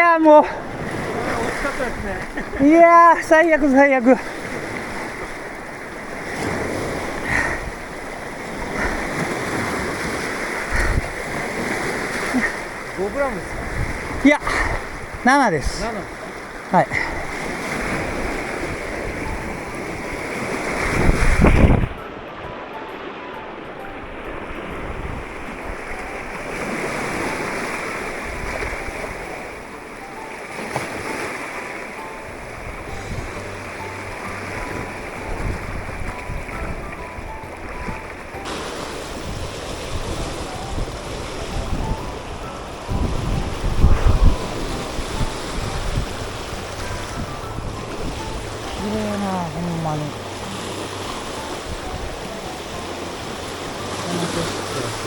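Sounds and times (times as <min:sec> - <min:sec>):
seawater washing and splashing: 0:00.0 - 0:23.3, 0:24.0 - 0:55.0
sea water rushing: 0:00.0 - 0:55.0
wind buffeting microphone: 0:00.0 - 0:55.0
wind rushing: 0:17.2 - 0:22.7, 0:32.1 - 0:53.9.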